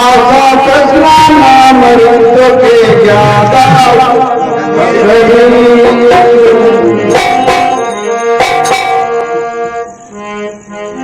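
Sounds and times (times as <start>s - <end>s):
held melody notes: 4.4s - 11.0s
drum strikes: 5.8s - 9.3s.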